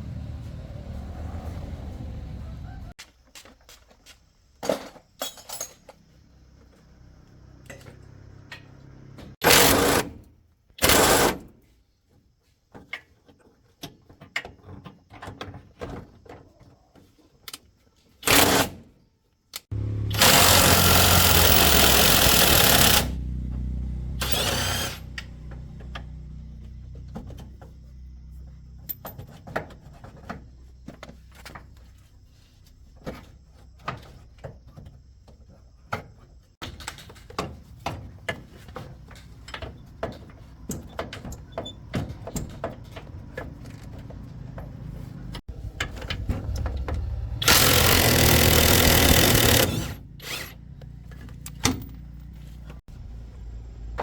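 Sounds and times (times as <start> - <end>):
tool clinks and knocks: 4.6 - 6.1, 28.8 - 31.6, 50.8 - 52.8
power tool bursts: 9.4 - 10.2, 10.8 - 11.4, 18.2 - 18.8, 19.8 - 23.2, 24.1 - 25.4, 47.4 - 50.6.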